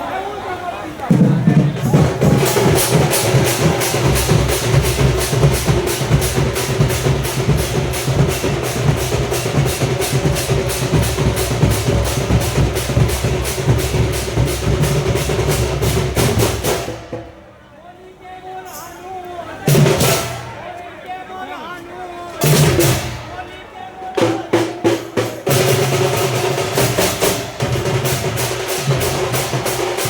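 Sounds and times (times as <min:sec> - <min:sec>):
pounding drums: 0:01.1 - 0:17.6, 0:19.7 - 0:20.7, 0:22.4 - 0:23.6, 0:24.2 - 0:30.0
brass gongs struck: 0:01.8 - 0:17.0.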